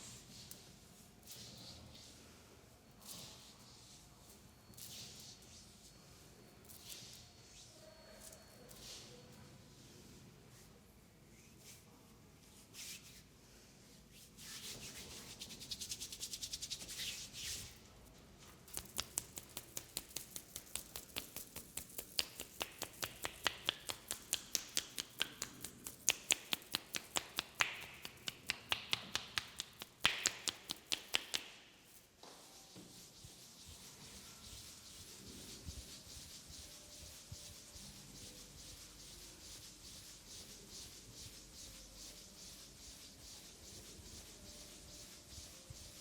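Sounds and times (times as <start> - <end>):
sharp slapping massage strokes: 18.6 - 32.1
hands rubbing skin: 18.6 - 46.0.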